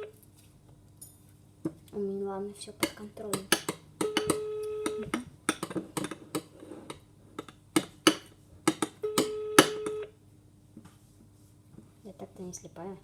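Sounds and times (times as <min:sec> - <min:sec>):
spoon knocking against dish: 0:02.8 - 0:06.5
telephone ringback beep: 0:04.0 - 0:05.1, 0:09.0 - 0:10.1.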